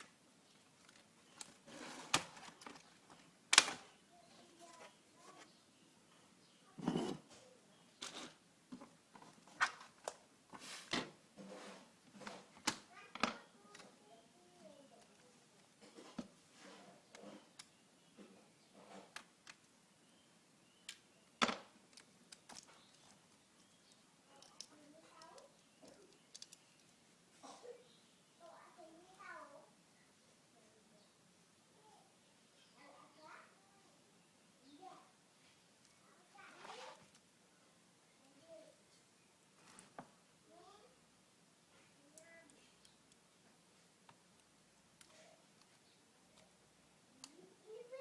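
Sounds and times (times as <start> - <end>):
light clicks and taps: 21.9 - 26.9.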